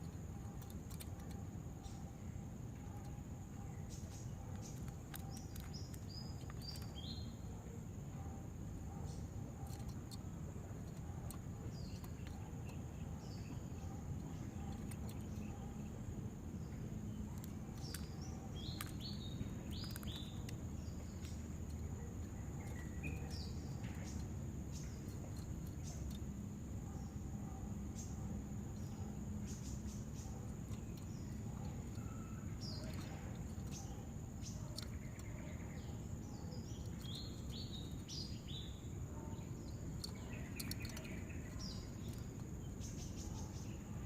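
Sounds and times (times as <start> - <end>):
bird chirping: 0.0 - 44.0.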